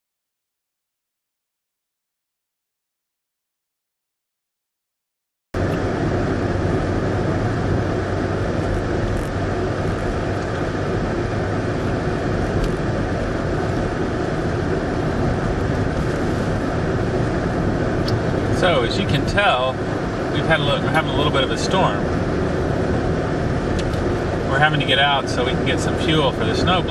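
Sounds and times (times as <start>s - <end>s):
car engine hum: 5.6s - 26.9s
road and tyre noise: 5.6s - 26.9s.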